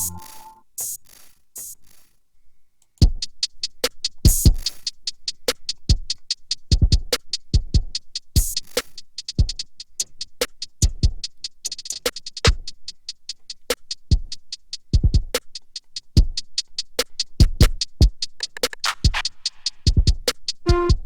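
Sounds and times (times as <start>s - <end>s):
rapid closed hi-hats: 0.0s - 2.2s, 3.0s - 21.0s
snare hits: 18.4s - 19.3s.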